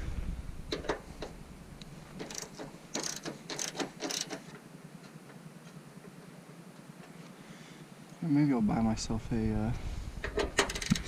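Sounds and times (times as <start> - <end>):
ratchet wrench clicking: 2.2 - 4.5, 10.6 - 11.0.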